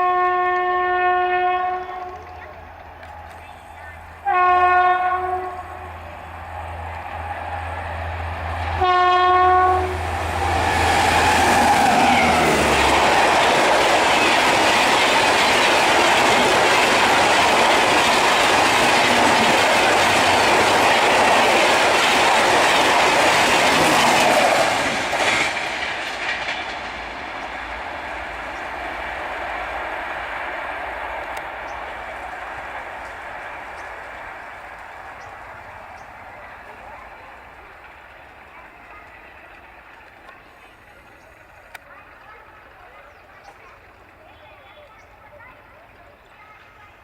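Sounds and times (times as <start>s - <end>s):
train horn blast: 0.0s - 2.4s, 4.2s - 6.0s, 8.7s - 12.4s
train wheels rushing on rail: 0.0s - 47.0s.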